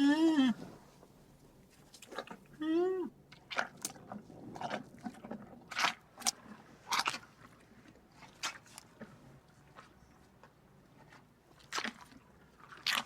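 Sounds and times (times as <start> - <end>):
animal chewing with crunches: 11.6 - 13.0.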